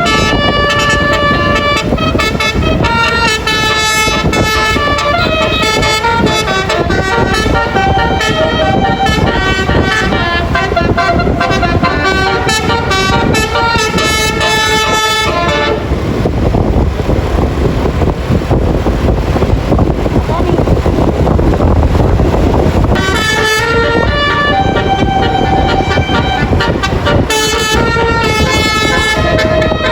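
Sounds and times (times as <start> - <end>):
bus musical horn tune: 0.0 - 16.3, 22.4 - 29.9
low rumble: 0.0 - 29.9.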